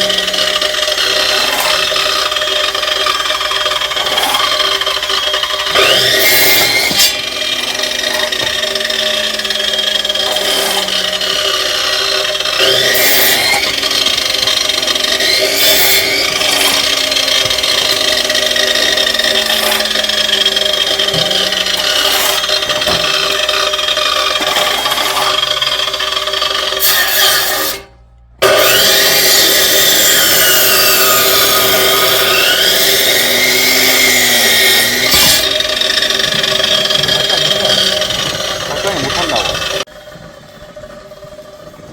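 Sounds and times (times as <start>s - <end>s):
power tool cutting wood: 0.0s - 40.8s.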